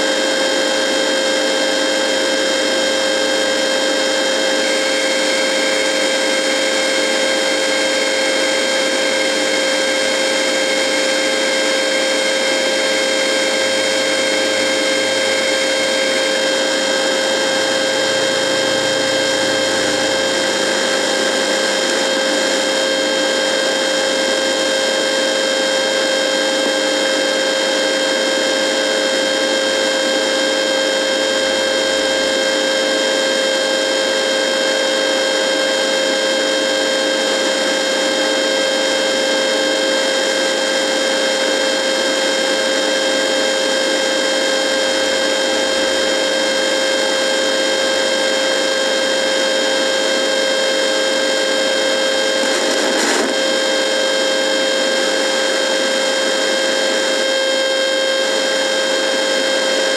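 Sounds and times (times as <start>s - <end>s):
radio electrical buzz: 3.9s - 34.3s, 50.5s - 58.2s.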